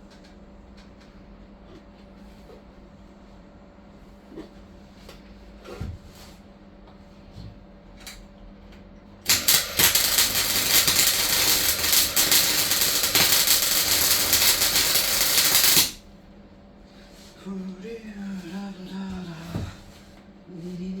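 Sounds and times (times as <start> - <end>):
welding arc crackling: 9.3 - 16.0.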